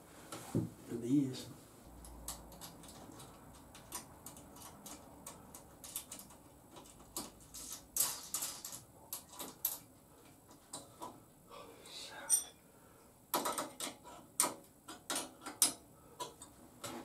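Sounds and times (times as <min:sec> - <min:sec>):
small parts and tools clicking: 0:02.0 - 0:09.9, 0:13.3 - 0:16.6.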